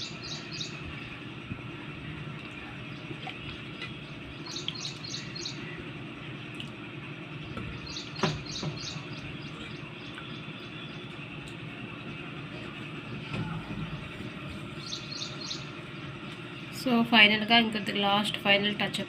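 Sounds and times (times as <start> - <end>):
small bird chirping: 0.0 - 0.9, 4.0 - 5.7, 7.7 - 11.1, 13.9 - 15.8
low background hum: 0.0 - 19.0.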